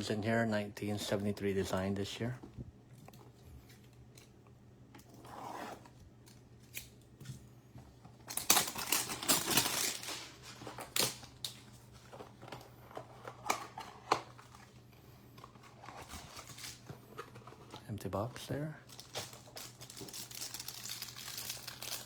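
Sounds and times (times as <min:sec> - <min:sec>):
tearing and rustling: 0:08.3 - 0:11.2, 0:18.9 - 0:22.0.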